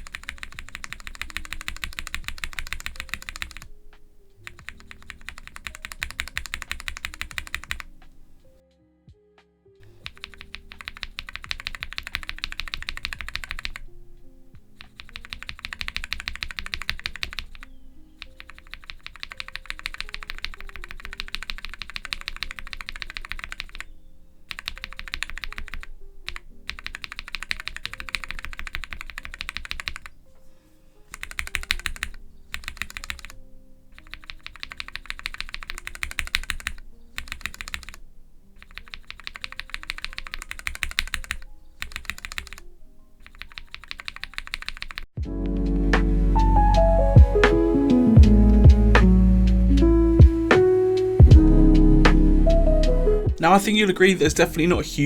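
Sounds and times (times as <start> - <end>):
mechanical keyboard typing: 0.0 - 8.4, 9.9 - 14.0, 14.7 - 30.2, 31.1 - 45.2
soft background music: 0.0 - 55.0.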